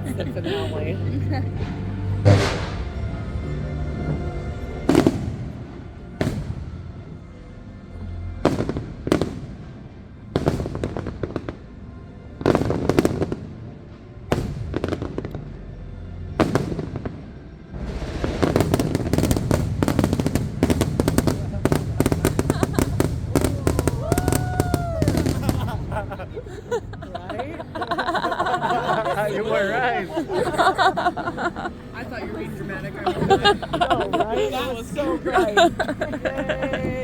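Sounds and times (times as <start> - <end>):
music soundtrack: 0.0 - 37.0
fireworks bangs and crackling: 2.2 - 3.1, 4.9 - 6.7, 8.4 - 9.7, 10.3 - 11.6, 12.4 - 13.6, 14.3 - 15.4, 16.4 - 17.2, 17.8 - 26.4.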